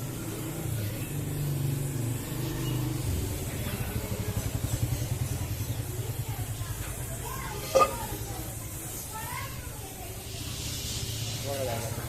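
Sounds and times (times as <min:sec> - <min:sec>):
engine running with fast throb: 0:00.0 - 0:09.1.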